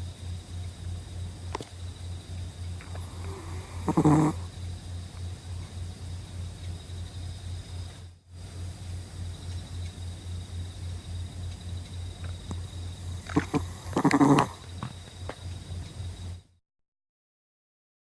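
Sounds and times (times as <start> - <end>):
animal snoring: 2.8 - 4.5, 13.2 - 14.7.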